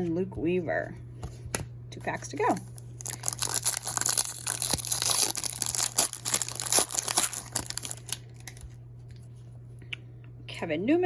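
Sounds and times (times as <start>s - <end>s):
wrapper crinkling and tearing: 2.5s - 8.8s.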